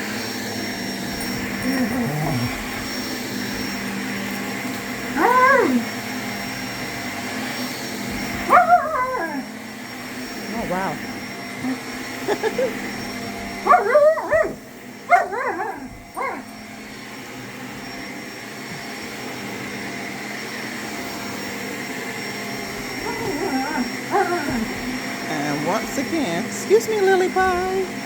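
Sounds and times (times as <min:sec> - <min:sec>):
vacuum cleaner running: 0:00.0 - 0:28.0
dog barking and yipping: 0:05.0 - 0:06.0, 0:08.2 - 0:09.5, 0:13.5 - 0:16.6, 0:22.8 - 0:25.1.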